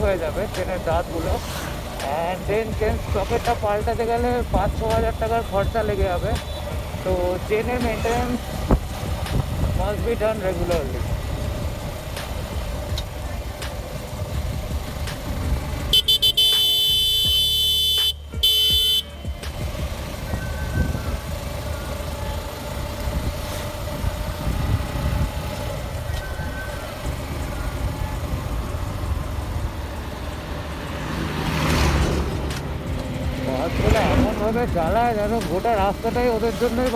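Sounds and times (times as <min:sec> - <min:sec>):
road traffic noise: 0:00.0 - 0:36.9
vehicle horn blasts: 0:05.8 - 0:07.0, 0:15.9 - 0:19.3.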